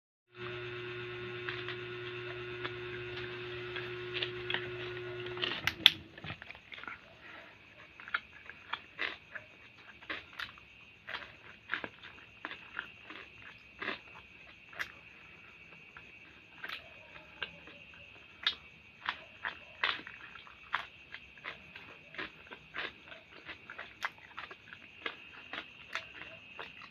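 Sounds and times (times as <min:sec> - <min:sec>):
steady electric hum: 0:00.3 - 0:06.6
chewing mouth smacks: 0:07.7 - 0:15.0, 0:18.4 - 0:26.9.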